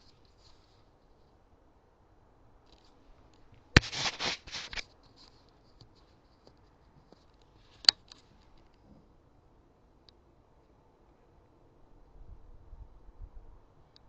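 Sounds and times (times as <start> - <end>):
scratchy rustling: 3.8 - 8.6.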